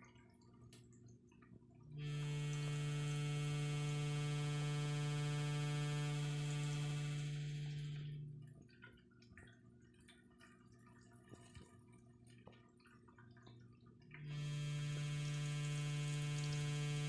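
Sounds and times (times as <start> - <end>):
water drips and trickles: 0.0 - 4.2, 7.8 - 17.0
toilet fill valve humming: 0.0 - 17.0.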